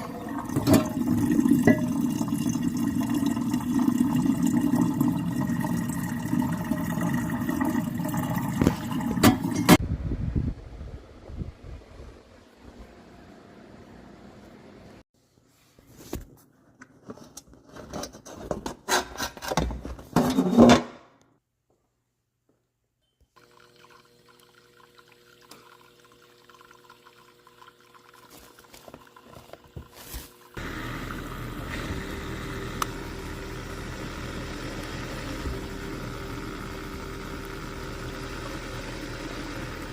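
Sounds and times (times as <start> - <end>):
faint hum with two held tones: 23.0 - 28.0
machine running: 30.6 - 39.9.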